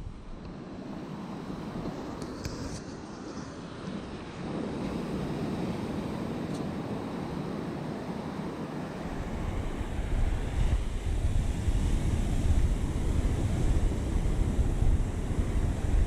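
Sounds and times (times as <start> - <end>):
ocean surf washing on beach: 0.0 - 16.0
wind buffeting microphone: 4.1 - 16.0.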